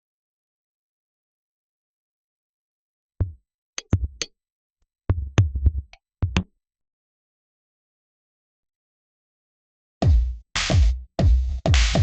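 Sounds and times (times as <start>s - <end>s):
drum machine hits: 5.1s - 6.4s, 10.0s - 12.0s
deep bass: 10.0s - 12.0s.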